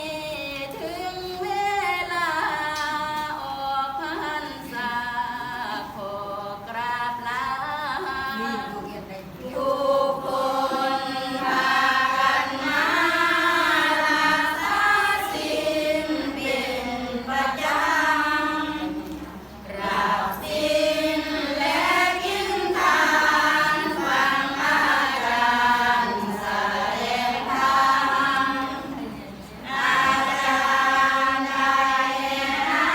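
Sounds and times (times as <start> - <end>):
group of voices singing: 9.4 - 32.9.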